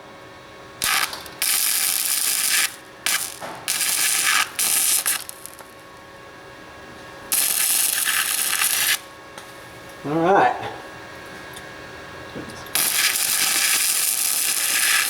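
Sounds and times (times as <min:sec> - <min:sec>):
arc welding crackling: 0:00.8 - 0:06.1, 0:07.3 - 0:09.7, 0:12.7 - 0:15.0.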